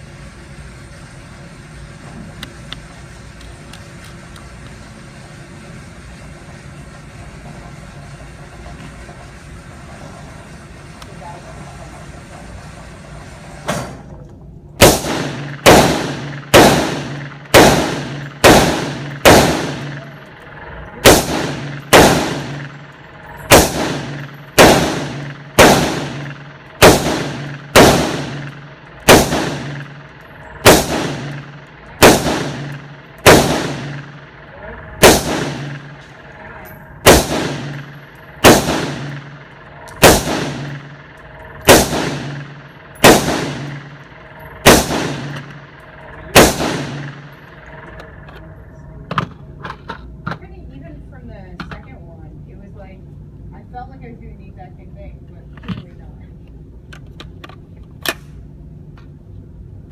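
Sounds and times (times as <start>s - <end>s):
low hum: 0.0s - 59.9s
gunshots: 14.8s - 36.4s, 37.0s - 48.2s.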